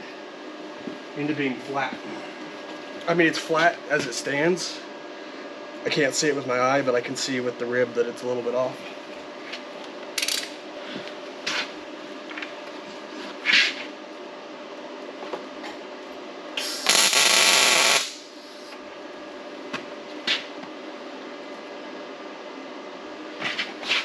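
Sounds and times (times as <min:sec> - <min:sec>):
arc welder crackling hiss: 0:16.6 - 0:18.7.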